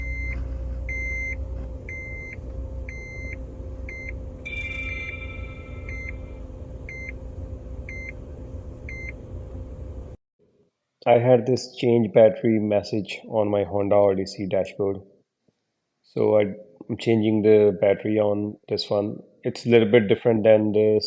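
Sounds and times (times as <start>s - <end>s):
dashboard warning chime beeping: 0.0s - 7.2s, 7.9s - 8.2s, 8.9s - 9.2s
several-note chime: 4.4s - 6.4s.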